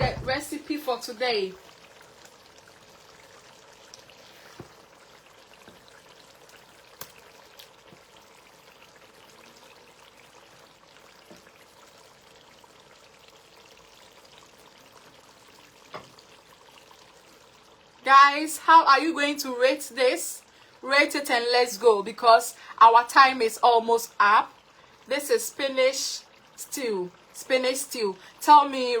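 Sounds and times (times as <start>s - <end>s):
stew simmering with sizzling hiss: 0.0s - 29.0s.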